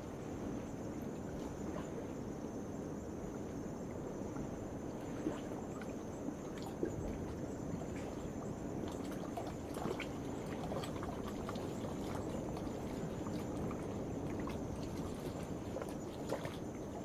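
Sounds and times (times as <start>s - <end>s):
small clicks and splashes: 8.9s - 17.0s.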